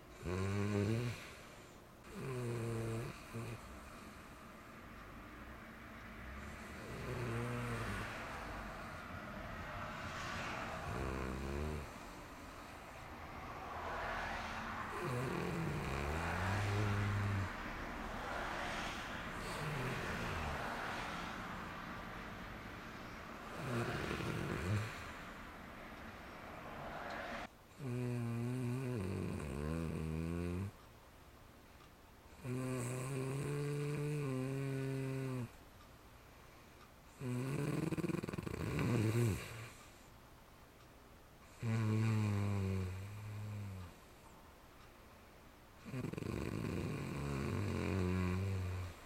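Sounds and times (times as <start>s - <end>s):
quiet breathing: 0.0s - 30.8s, 31.7s - 40.4s, 41.4s - 49.0s
person snoring: 0.1s - 4.3s, 6.2s - 21.4s, 23.4s - 25.4s, 27.8s - 30.8s, 32.4s - 35.6s, 37.2s - 39.8s, 41.5s - 44.0s, 45.8s - 49.0s.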